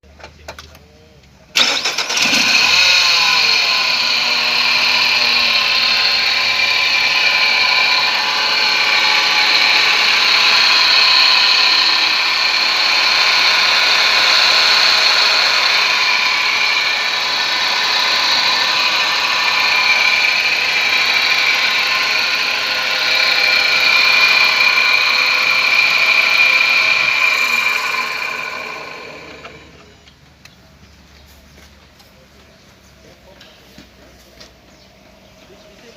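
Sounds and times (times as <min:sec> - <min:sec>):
car engine idling: 0:01.6 - 0:30.0
high-pitched alternator whine: 0:01.6 - 0:30.2.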